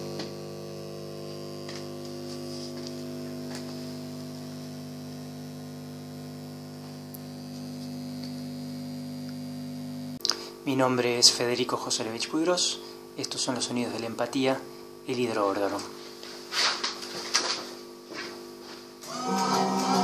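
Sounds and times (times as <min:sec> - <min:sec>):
low electrical hum: 0:00.0 - 0:20.0.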